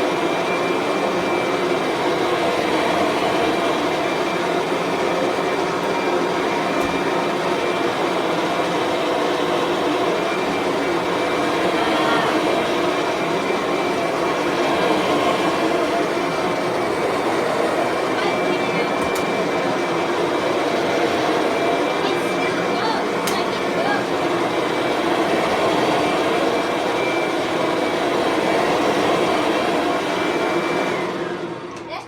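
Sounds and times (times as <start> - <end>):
vacuum cleaner running: 0.0 - 32.0.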